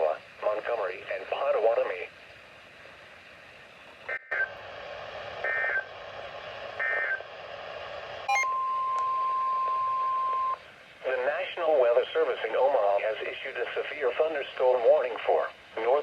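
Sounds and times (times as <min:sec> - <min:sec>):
steady attention tone: 0:08.3 - 0:08.7.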